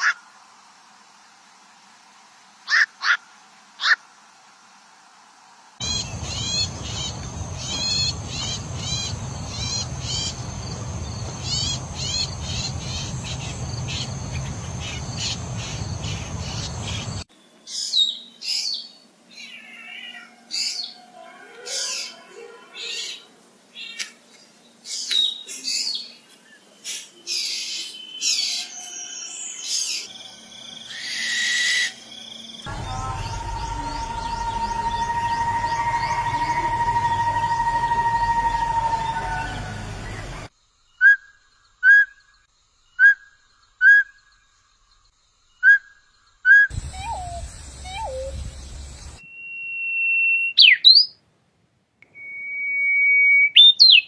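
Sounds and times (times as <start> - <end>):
background hiss and rumble: 0.2 - 21.2, 46.7 - 49.2
birds chirping: 5.8 - 31.3, 31.9 - 40.5, 45.5 - 49.3
bird calls sweeping in pitch: 46.7 - 49.2.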